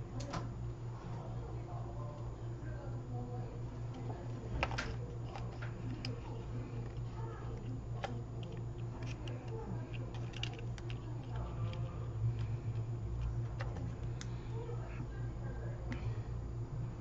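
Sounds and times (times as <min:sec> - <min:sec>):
low electrical hum: 0:00.0 - 0:17.0
small tools clicking and tapping: 0:07.6 - 0:12.8.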